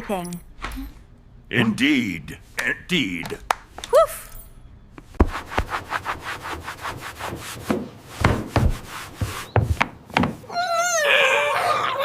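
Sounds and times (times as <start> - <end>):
wooden knocks: 7.3 - 10.4.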